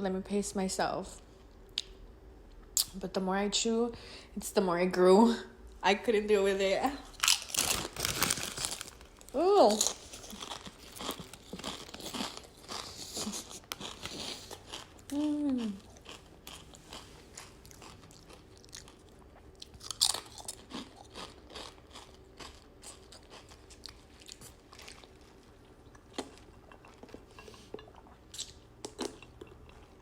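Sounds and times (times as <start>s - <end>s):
chewing sandwich with moist crunching: 7.2s - 30.0s.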